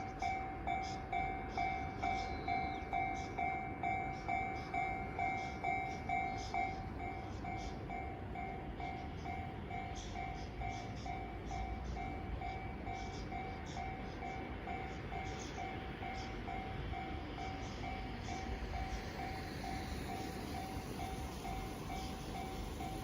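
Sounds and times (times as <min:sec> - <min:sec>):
level-crossing alarm ringing: 0:00.0 - 0:23.0
train rumbling over crossing: 0:00.0 - 0:23.0.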